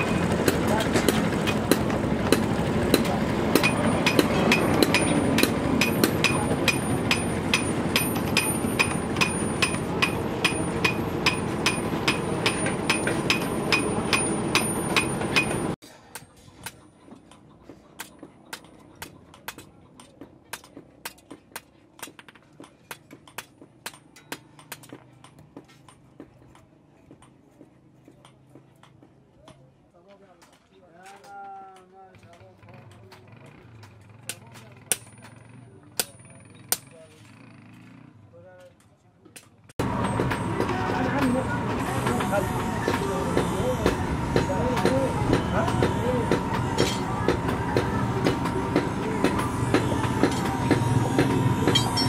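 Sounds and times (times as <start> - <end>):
hammer ringing on anvil: 1.1 - 15.8, 42.0 - 52.0.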